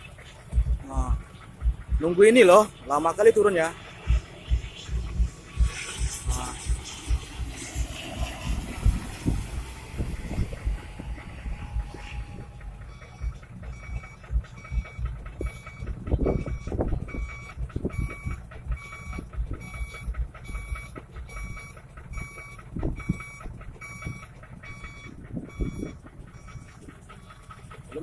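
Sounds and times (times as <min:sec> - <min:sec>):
irregular thumps: 0:00.0 - 0:28.0
low rumble: 0:00.0 - 0:28.0
electronic warning beeps: 0:10.1 - 0:27.4.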